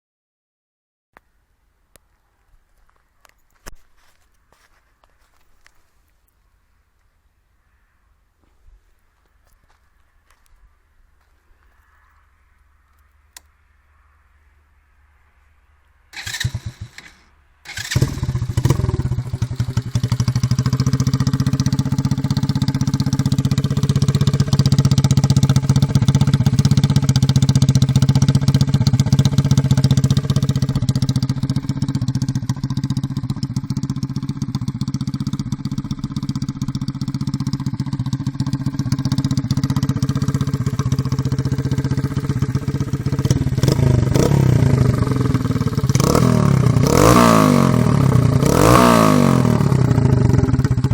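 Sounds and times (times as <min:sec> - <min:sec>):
motorcycle engine starting and idling: 0:16.1 - 0:50.9.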